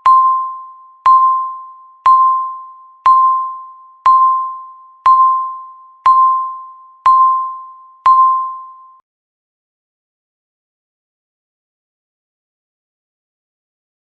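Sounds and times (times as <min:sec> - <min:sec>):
bell-like timer beeps: 0:00.0 - 0:09.0.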